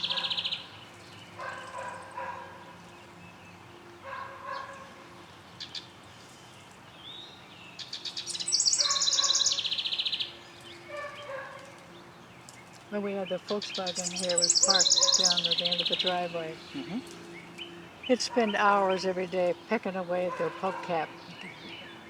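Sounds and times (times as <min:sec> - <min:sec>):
songbird trilling: 0:00.0 - 0:02.2, 0:07.0 - 0:22.0
soft bird calls: 0:05.6 - 0:22.0.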